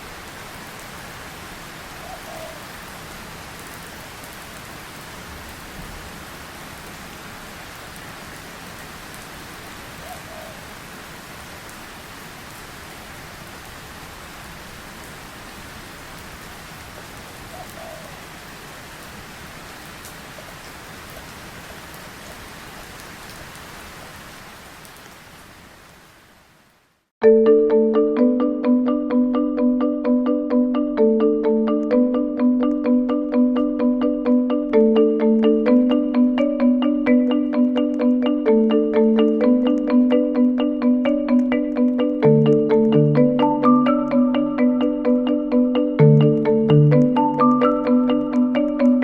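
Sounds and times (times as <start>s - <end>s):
steady rain falling: 0.0s - 27.1s, 34.7s - 44.6s.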